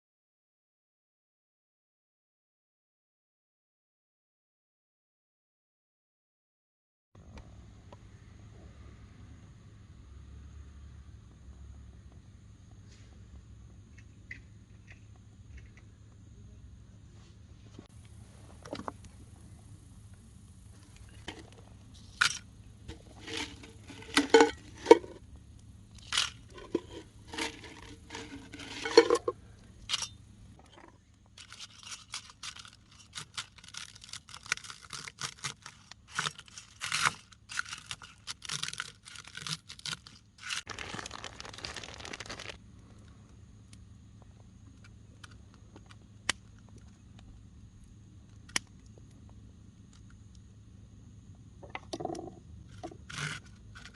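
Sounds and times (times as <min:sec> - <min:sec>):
crinkling and scraping: 0:17.2 - 0:25.3, 0:25.9 - 0:43.2, 0:51.6 - 0:53.9
potato chips being crushed: 0:31.4 - 0:42.6.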